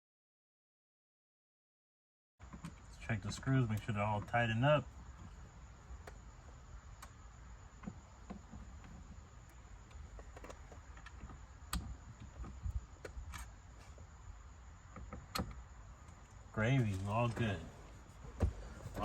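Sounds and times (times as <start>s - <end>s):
faint clicks and light knocks: 6.0s - 14.0s.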